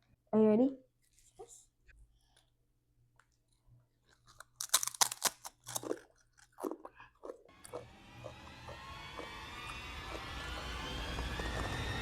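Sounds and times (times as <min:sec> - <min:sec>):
potato chips crunching: 0:04.0 - 0:08.4
steady background sound: 0:07.5 - 0:12.0.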